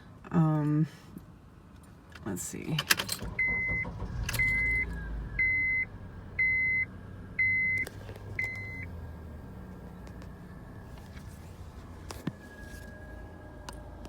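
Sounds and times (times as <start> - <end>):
car warning chime beeping: 3.2 - 9.0
car engine idling: 3.2 - 14.0.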